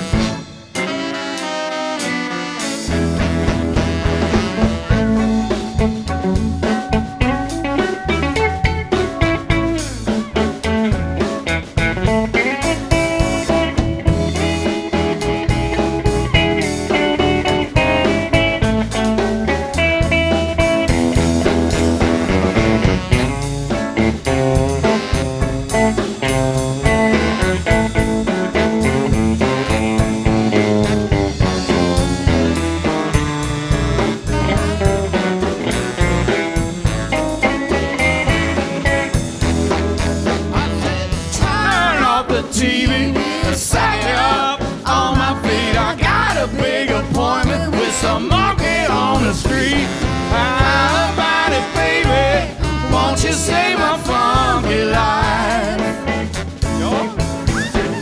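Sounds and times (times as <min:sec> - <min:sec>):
bass: 0:00.0 - 0:58.0
drum kit: 0:00.0 - 0:58.0
electric guitar: 0:00.0 - 0:58.0.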